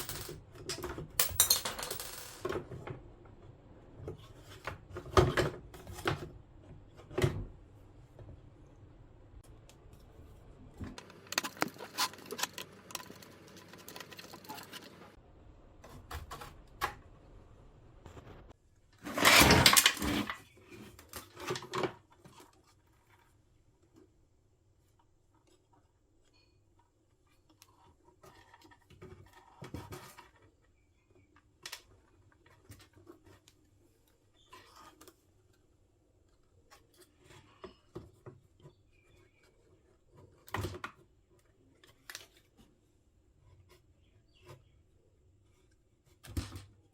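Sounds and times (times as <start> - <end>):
rustling: 9.9 - 15.2
plastic parts clicking and rattling: 10.8 - 15.2.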